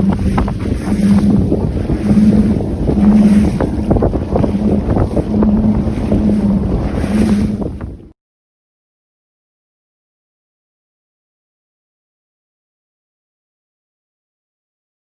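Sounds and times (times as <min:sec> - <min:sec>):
low pulsing hum: 0:00.0 - 0:08.1
wind buffeting the microphone: 0:00.0 - 0:08.1.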